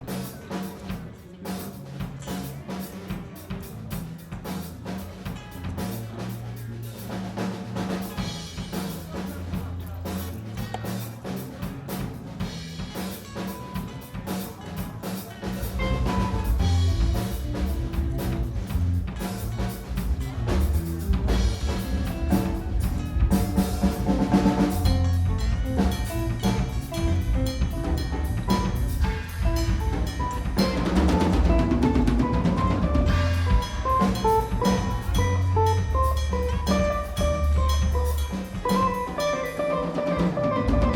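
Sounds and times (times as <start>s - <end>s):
bass guitar lines: 0.0s - 40.9s
live band playing: 0.0s - 40.9s
bass drum and snare hits: 15.6s - 39.4s.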